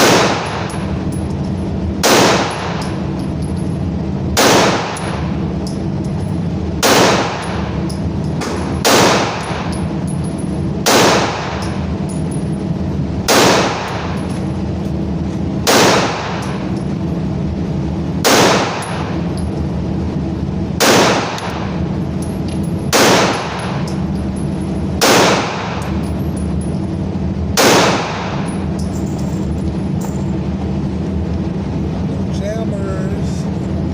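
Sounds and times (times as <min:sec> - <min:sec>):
gunshots with ringing tail: 0:00.0 - 0:01.2, 0:02.0 - 0:03.2, 0:04.3 - 0:05.6, 0:06.8 - 0:10.1, 0:10.8 - 0:12.1, 0:13.2 - 0:14.4, 0:15.6 - 0:16.8, 0:18.2 - 0:19.3, 0:20.8 - 0:22.0, 0:22.7 - 0:26.2, 0:27.5 - 0:28.8
steady low hum: 0:00.0 - 0:33.9.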